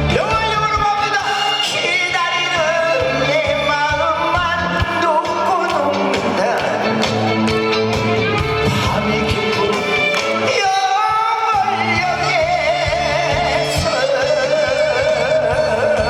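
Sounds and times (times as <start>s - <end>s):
band with steady drum beat: 0.0s - 16.0s
person singing with vibrato: 0.0s - 16.0s.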